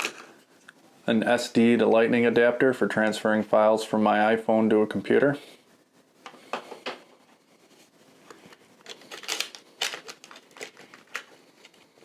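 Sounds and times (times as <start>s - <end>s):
soft crinkling and rustling: 6.2s - 12.0s.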